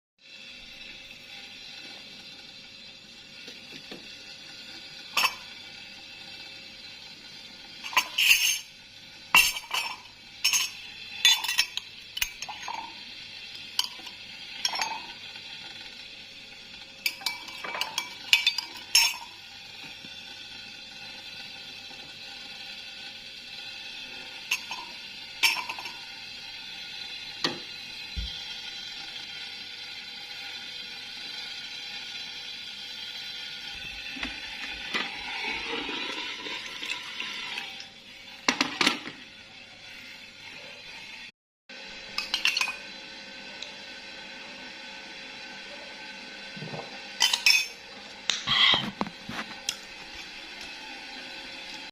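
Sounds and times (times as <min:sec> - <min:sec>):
utensils and dishes clinking: 0:05.1 - 0:05.6, 0:07.8 - 0:08.7, 0:09.3 - 0:15.3, 0:17.0 - 0:19.4, 0:24.5 - 0:26.1, 0:34.2 - 0:37.7, 0:38.4 - 0:39.2, 0:42.1 - 0:42.9, 0:46.6 - 0:49.9.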